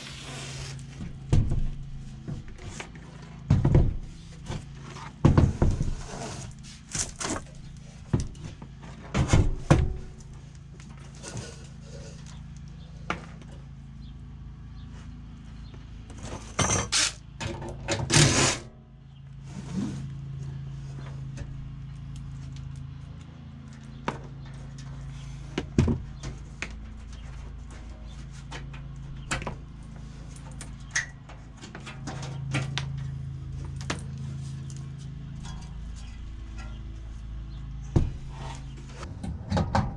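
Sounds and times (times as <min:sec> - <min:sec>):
tools knocking and clanking on metal: 0:01.0 - 0:05.8.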